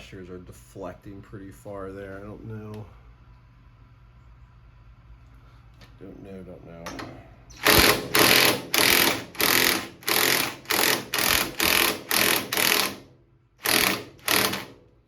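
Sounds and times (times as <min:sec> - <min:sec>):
impact wrench bursts: 0:07.5 - 0:14.9.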